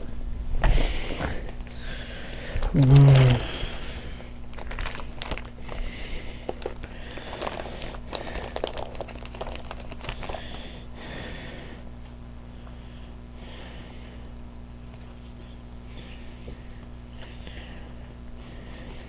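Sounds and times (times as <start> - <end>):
foil wrapper crinkling: 2.6 - 10.9.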